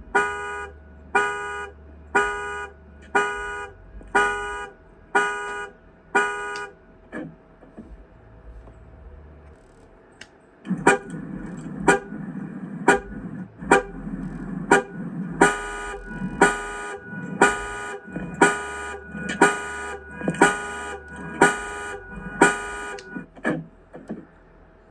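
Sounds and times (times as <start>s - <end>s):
car horn honking: 0.0s - 6.8s, 10.7s - 23.3s.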